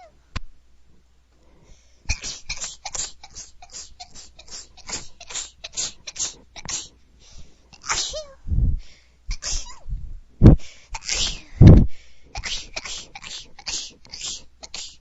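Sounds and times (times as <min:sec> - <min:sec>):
woman sniffing: 0:01.7 - 0:08.4, 0:10.6 - 0:15.0
woman sneezing: 0:07.8 - 0:08.4, 0:09.3 - 0:09.9.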